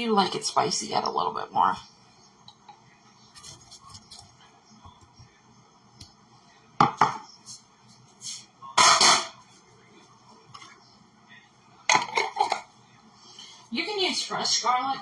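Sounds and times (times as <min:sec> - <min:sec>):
kitchenware clinking: 0:06.8 - 0:07.2, 0:08.8 - 0:09.4, 0:11.9 - 0:12.8
kitchenware clattering: 0:06.8 - 0:07.3, 0:08.8 - 0:09.4, 0:11.9 - 0:12.8.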